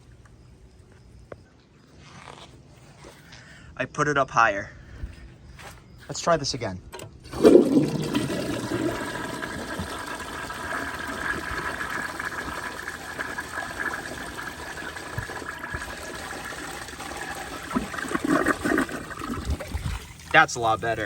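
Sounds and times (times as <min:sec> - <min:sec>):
toilet flushing: 0:07.2 - 0:21.0.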